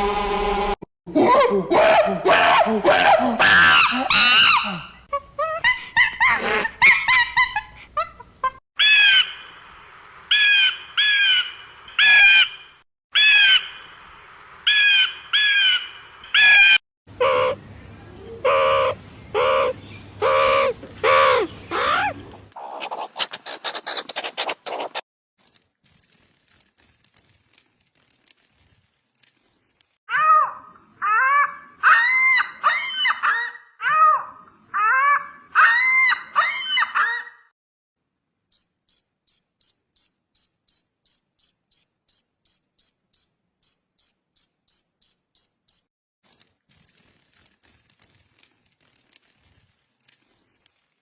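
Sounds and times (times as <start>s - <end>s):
cricket chirping: 38.5s - 45.8s.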